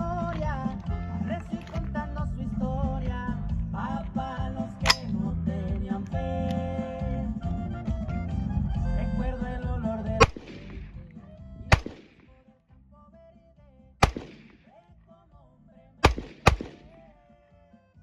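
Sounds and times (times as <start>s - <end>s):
music: 0.0s - 18.0s
gunshots with echo: 10.2s - 11.1s, 11.7s - 12.3s, 14.0s - 14.8s, 16.0s - 17.0s.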